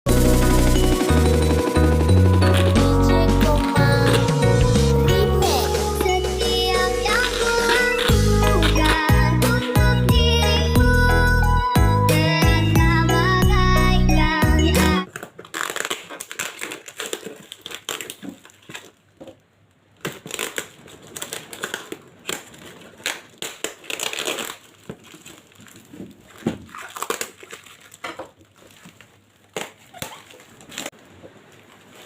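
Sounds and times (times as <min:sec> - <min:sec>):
packaging crinkling and tearing: 0:07.0 - 0:09.0, 0:15.0 - 0:32.0.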